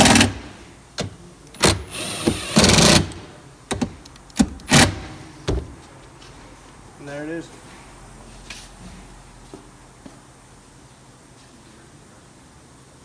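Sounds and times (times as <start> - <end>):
power driver whirring: 0.0 - 5.1.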